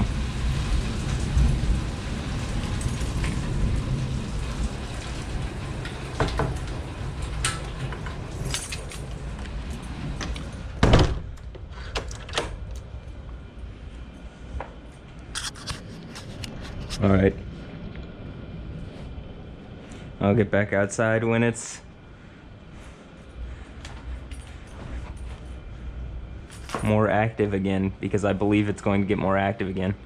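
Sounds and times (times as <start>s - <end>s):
wind and rain: 0.0s - 30.0s
door shutting with a thud: 10.8s - 12.6s.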